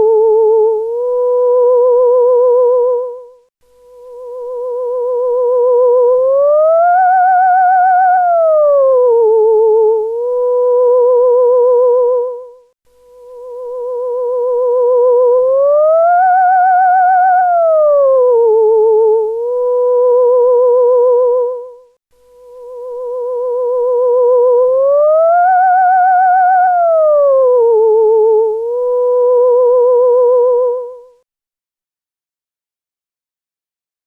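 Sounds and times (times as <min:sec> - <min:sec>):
theremin wavering tone: 0:03.9 - 0:12.6, 0:13.2 - 0:21.8, 0:22.4 - 0:31.1.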